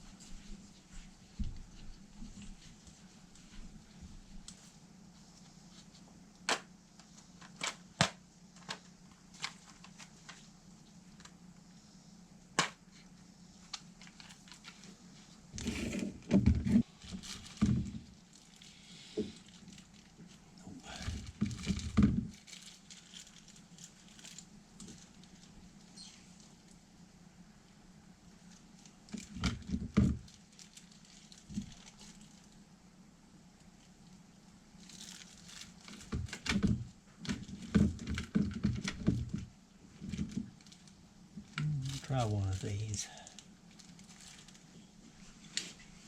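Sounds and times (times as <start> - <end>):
steady low hum: 0.0 - 46.0
rustling and knocking: 15.6 - 18.2, 35.0 - 40.8.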